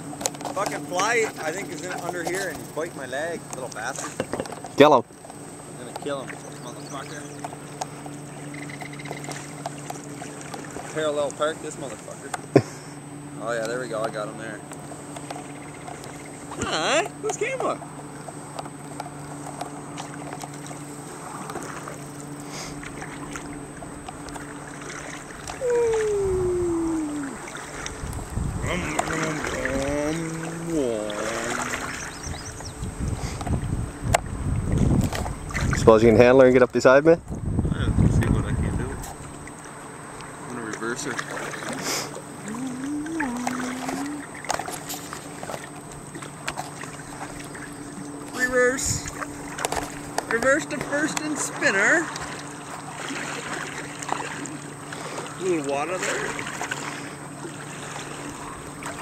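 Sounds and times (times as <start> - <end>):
water splashes: 0.0 - 36.6, 38.1 - 59.0
steady low hum: 0.0 - 59.0
paddle knocking on hull: 3.5 - 4.9, 27.3 - 32.4
loud tone sliding down in pitch: 25.6 - 27.5.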